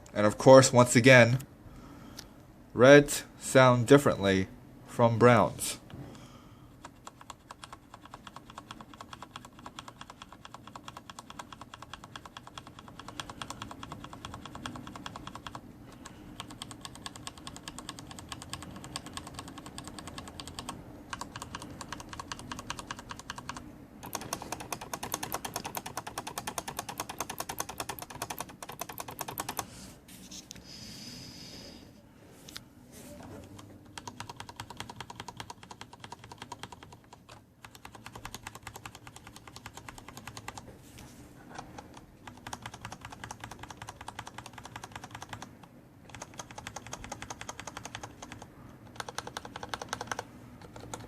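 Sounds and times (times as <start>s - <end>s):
fast typing on mechanical keyboard: 6.8s - 29.7s, 33.4s - 40.7s, 41.6s - 51.0s.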